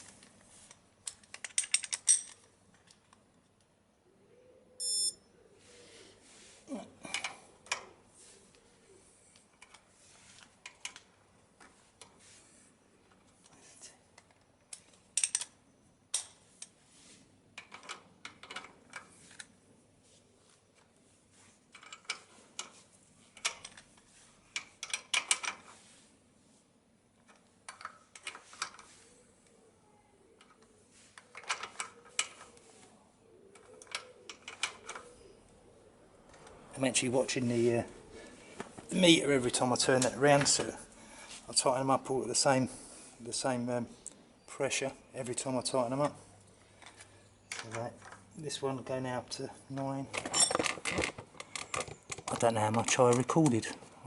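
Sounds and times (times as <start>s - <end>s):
electronic beep: 4.8s - 5.2s.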